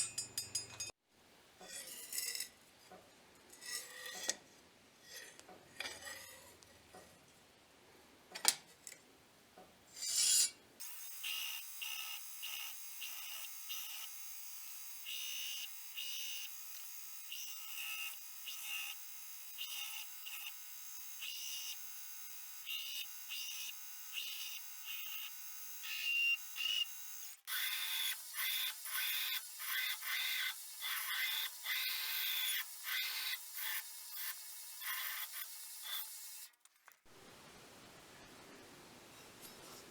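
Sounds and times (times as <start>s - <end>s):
file rasping on steel: 10.0s - 10.6s.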